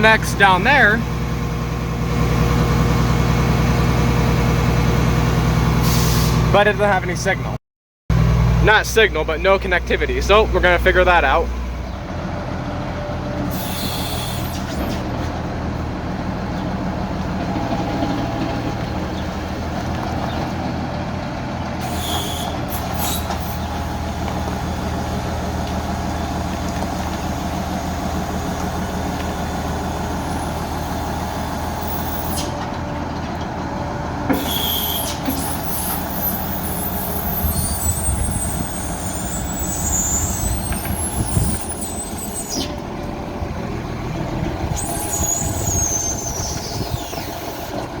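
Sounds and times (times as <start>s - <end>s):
tractor engine running: 0.0s - 5.8s, 6.4s - 48.0s
faint high squeal: 34.4s - 42.8s, 44.8s - 47.7s.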